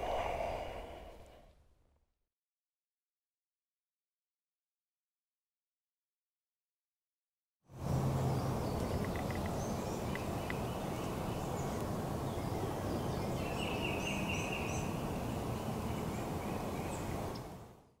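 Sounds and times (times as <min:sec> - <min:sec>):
low outdoor background: 0:00.0 - 0:02.1, 0:07.7 - 0:18.0
small birds chirping: 0:08.1 - 0:17.5.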